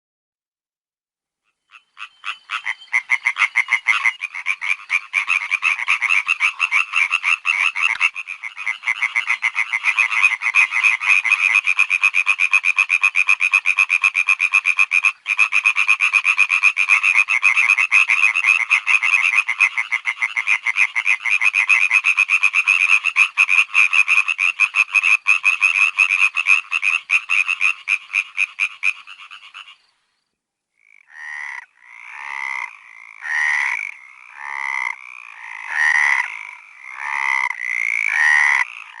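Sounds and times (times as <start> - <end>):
frog croaks: 1.4 - 39.0
chorus of frogs trilling: 1.7 - 29.9, 30.8 - 39.0.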